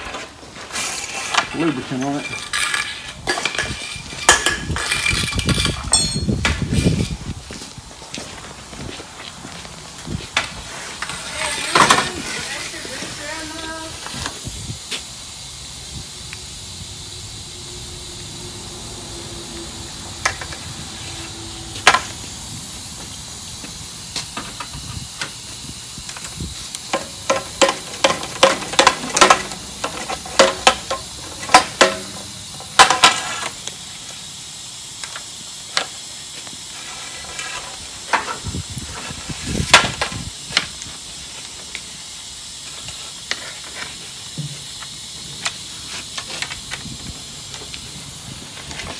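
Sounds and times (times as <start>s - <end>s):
steady hiss: 0.0s - 48.9s
metal clicks and clinks: 2.0s - 7.2s.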